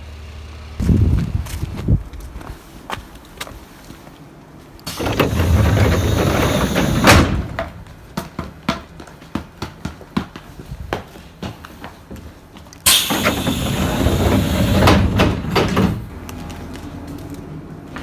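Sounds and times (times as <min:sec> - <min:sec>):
train sliding door hissing: 0:04.8 - 0:07.8, 0:12.8 - 0:16.2.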